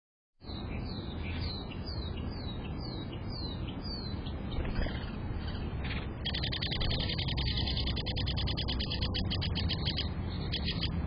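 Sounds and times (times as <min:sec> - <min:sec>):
low background rumble: 0:00.5 - 0:11.0
bird whistling: 0:06.2 - 0:11.0.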